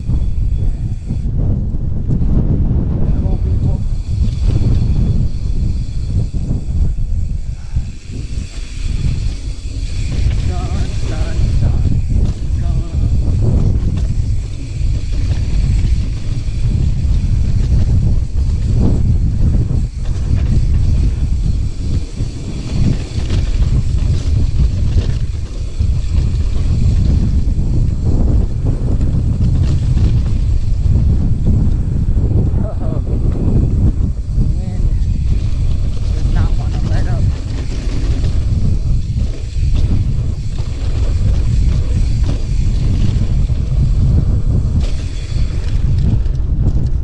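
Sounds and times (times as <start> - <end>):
wind buffeting microphone: 0.0 - 47.0
tyres rattling on dirt: 7.6 - 27.8, 32.7 - 46.5.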